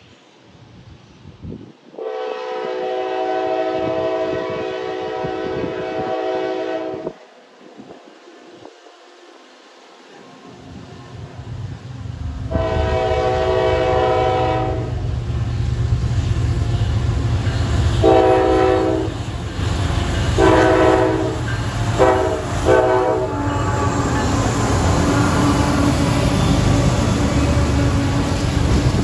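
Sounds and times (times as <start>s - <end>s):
train air horn blasts: 1.9s - 7.5s, 12.5s - 15.1s, 17.4s - 28.5s
locomotive and wheels rumbling: 7.0s - 29.0s.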